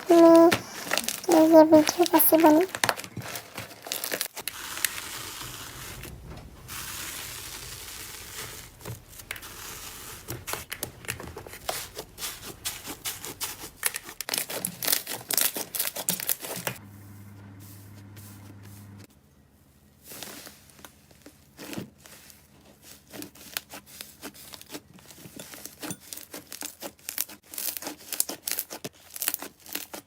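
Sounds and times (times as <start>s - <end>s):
slime crackling and popping: 3.8s - 16.4s
low hum: 16.8s - 19.1s.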